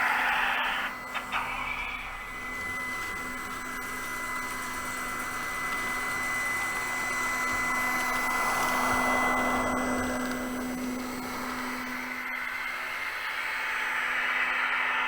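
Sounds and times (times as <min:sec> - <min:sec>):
vacuum motor whirring: 0:00.2 - 0:12.1.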